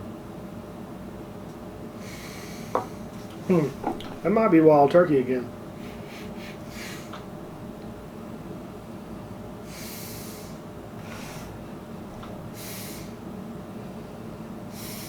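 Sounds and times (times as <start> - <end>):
man sniffing: 5.9 - 7.2, 9.7 - 11.6, 12.5 - 13.2, 14.7 - 15.0.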